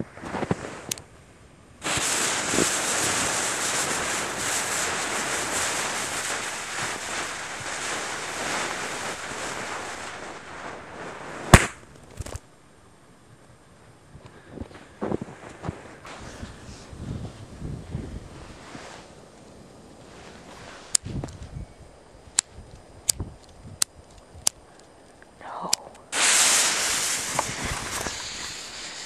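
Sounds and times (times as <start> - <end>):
firecracker bang: 1.8 - 9.0, 11.3 - 12.4, 26.1 - 29.0
fuse sizzling: 1.8 - 13.1, 13.7 - 29.0
short crack: 11.5 - 12.4.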